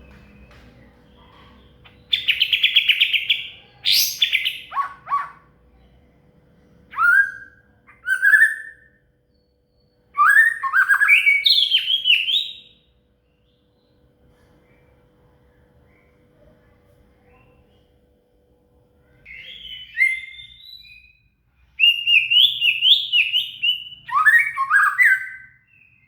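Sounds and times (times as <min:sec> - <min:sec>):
bird singing whistled phrases: 0:06.9 - 0:09.0, 0:09.8 - 0:12.9, 0:19.3 - 0:21.2, 0:21.8 - 0:26.0.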